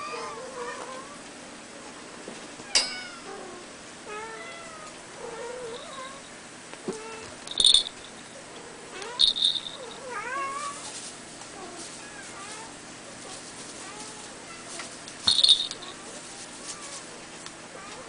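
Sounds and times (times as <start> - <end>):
high-pitched jingling bursts: 7.5 - 8.2, 9.2 - 10.0, 15.3 - 16.0.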